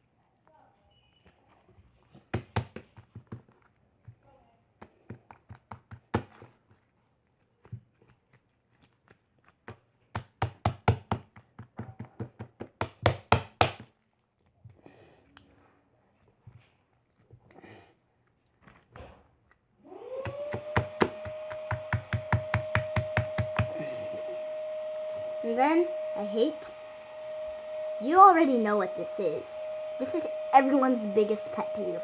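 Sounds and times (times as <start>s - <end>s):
slime slapping: 2.2s - 6.8s, 7.6s - 14.0s, 20.2s - 23.8s.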